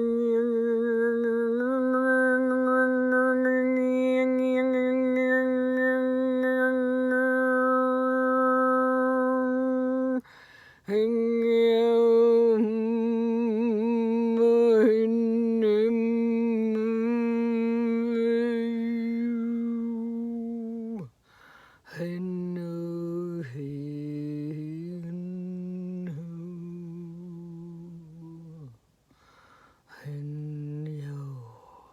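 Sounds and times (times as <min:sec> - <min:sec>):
woman humming long tones: 0:00.0 - 0:21.2, 0:21.9 - 0:28.8, 0:29.9 - 0:31.9
short breath: 0:10.2 - 0:10.9, 0:21.2 - 0:21.9, 0:29.0 - 0:29.9.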